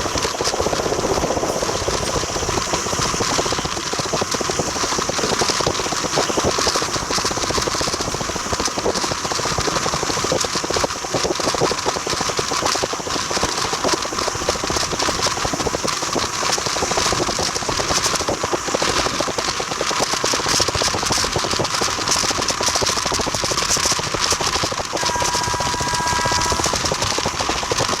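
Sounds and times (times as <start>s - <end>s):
train wheels clattering: 0.0s - 28.0s
steady whistle tone: 24.9s - 27.9s.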